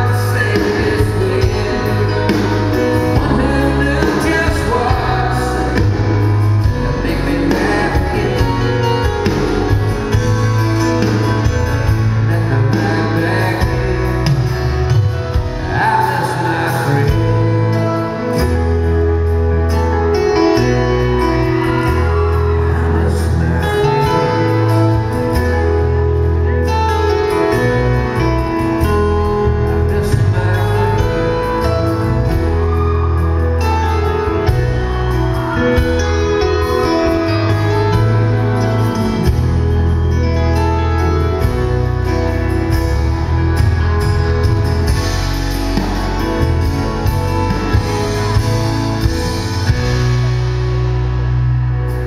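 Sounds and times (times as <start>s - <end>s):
person singing: 0.0s - 10.2s, 11.0s - 18.9s, 19.7s - 26.0s, 27.2s - 39.7s
country band playing a ballad: 0.0s - 52.0s.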